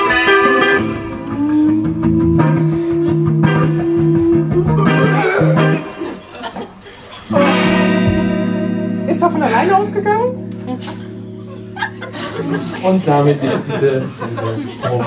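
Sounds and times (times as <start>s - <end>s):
bass line: 0.0s - 5.9s, 7.3s - 12.9s
electric guitar sustained notes: 0.0s - 6.5s, 7.3s - 13.8s.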